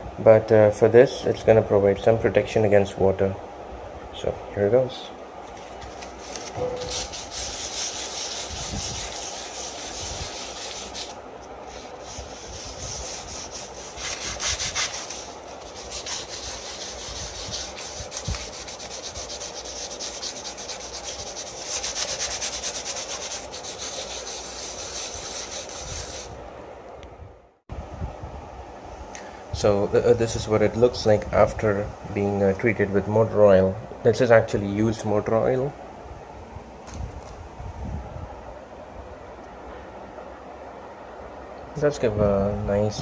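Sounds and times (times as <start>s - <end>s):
scratchy rubbing on wood: 5.6s - 26.3s.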